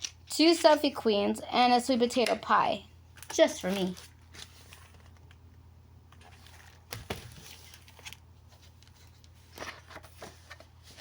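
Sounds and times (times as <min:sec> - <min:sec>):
low steady hum: 0:00.0 - 0:11.0
paper rustling: 0:03.2 - 0:05.4, 0:06.1 - 0:11.0.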